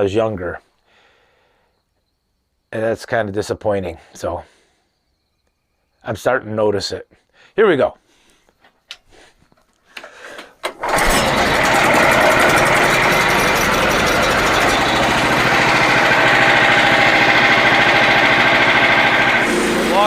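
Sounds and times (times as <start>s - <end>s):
small gasoline engine running: 10.8s - 20.0s.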